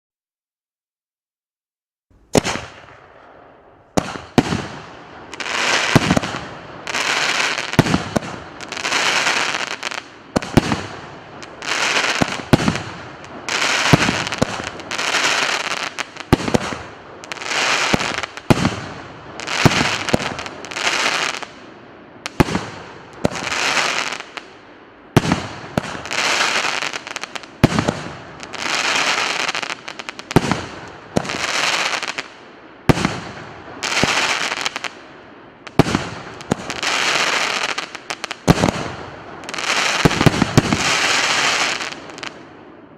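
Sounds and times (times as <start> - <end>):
fireworks crackling burst: 2.2 - 42.5
fireworks launch pops: 2.3 - 3.3, 3.9 - 6.5, 13.6 - 16.9.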